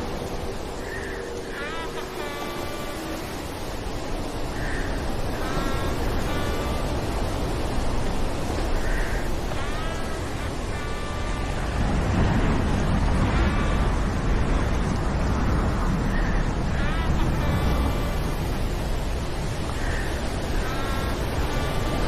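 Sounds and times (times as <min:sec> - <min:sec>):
low rumbling storm noise: 0:00.0 - 0:22.0
crow cawing: 0:00.8 - 0:03.3, 0:04.5 - 0:06.8, 0:08.8 - 0:11.5, 0:19.7 - 0:22.0.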